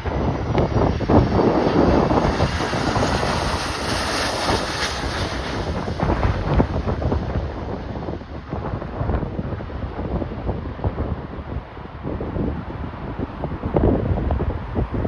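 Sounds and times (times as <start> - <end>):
jet engine hiss: 0.0 - 7.7
wind buffeting microphone: 0.0 - 15.0.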